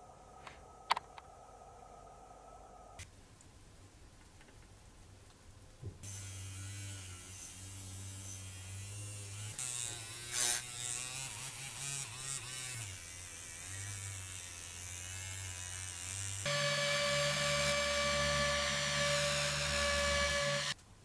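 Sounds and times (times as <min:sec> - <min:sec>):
handheld electric tool buzzing: 0:06.1 - 0:20.8.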